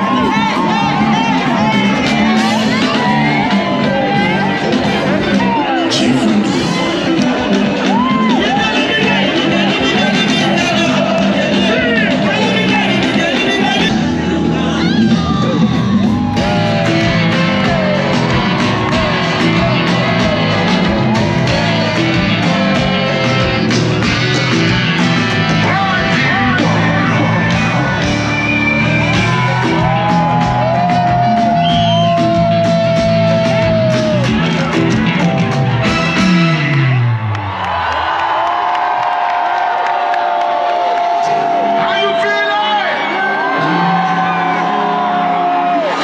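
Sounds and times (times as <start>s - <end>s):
voices singing: 0.0s - 24.4s
crowd shouting along: 0.0s - 46.0s
loud live afrobeat music: 0.0s - 46.0s.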